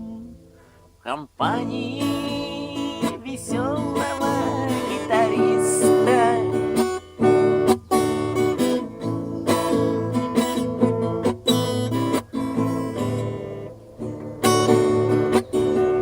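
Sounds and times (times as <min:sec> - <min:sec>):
acoustic guitar strumming: 0:00.0 - 0:16.0
man singing: 0:01.0 - 0:06.8.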